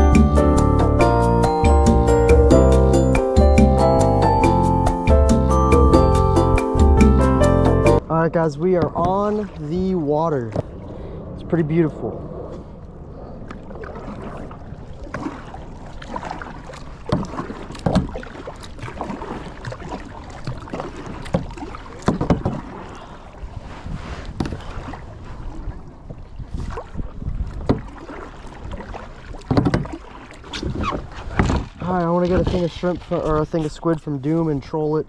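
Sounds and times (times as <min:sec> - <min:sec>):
water sloshing against hull: 0:08.0 - 0:35.0
paddle strokes splashing: 0:08.7 - 0:11.2, 0:12.5 - 0:34.6
wind noise on microphone: 0:22.2 - 0:33.8.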